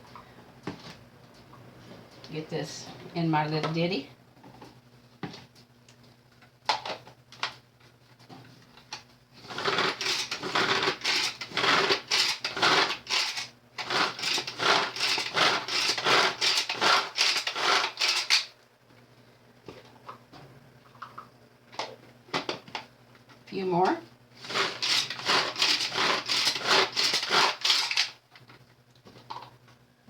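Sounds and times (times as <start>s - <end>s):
kitchen chopper clattering: 9.5s - 18.5s, 24.4s - 28.1s.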